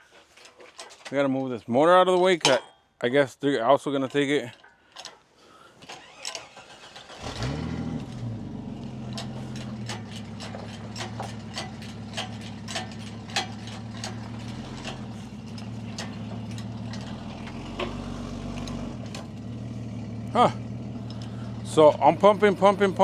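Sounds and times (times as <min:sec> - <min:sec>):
vehicle engine starting and idling: 0:05.8 - 0:23.0.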